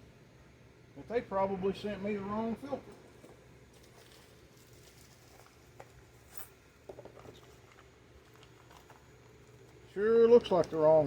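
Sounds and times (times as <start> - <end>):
low room hum: 0.0 - 11.0
faint clicks and rustles: 2.9 - 10.8.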